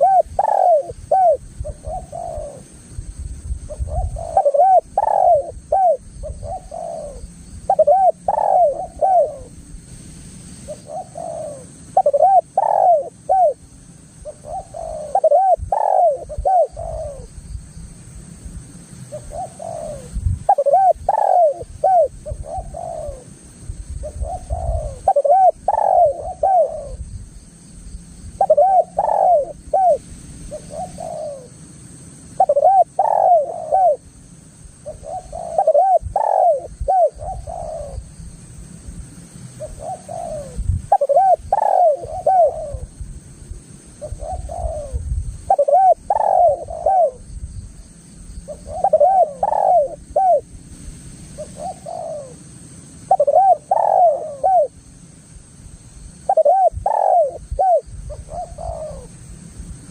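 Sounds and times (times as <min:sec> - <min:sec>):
dove cooing: 0:00.0 - 0:02.7, 0:03.7 - 0:09.6, 0:10.7 - 0:17.4, 0:19.1 - 0:23.3, 0:24.0 - 0:27.1, 0:28.4 - 0:31.6, 0:32.4 - 0:34.1, 0:34.8 - 0:38.1, 0:39.6 - 0:43.0, 0:43.9 - 0:47.3, 0:48.5 - 0:50.5, 0:51.4 - 0:54.8, 0:56.2 - 0:59.2
steady high hiss: 0:00.0 - 0:59.9.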